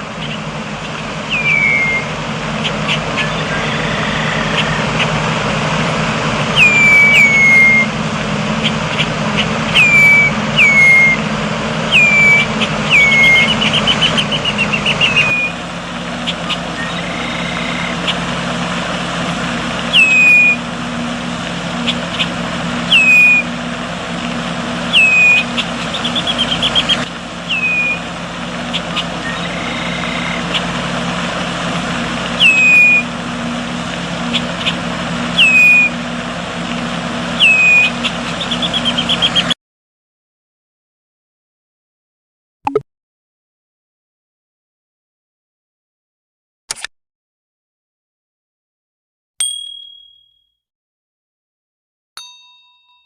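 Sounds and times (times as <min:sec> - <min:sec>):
bird calling: 0:00.0 - 0:05.3, 0:06.5 - 0:18.5, 0:19.8 - 0:20.8, 0:21.6 - 0:23.6, 0:24.8 - 0:31.0, 0:32.2 - 0:33.4, 0:34.2 - 0:36.2, 0:37.3 - 0:39.6.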